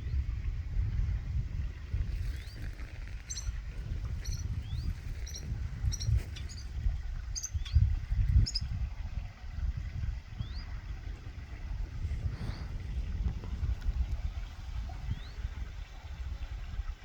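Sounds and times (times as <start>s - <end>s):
low rumbling noise: 0.0s - 17.0s
small birds chirping: 2.1s - 8.7s.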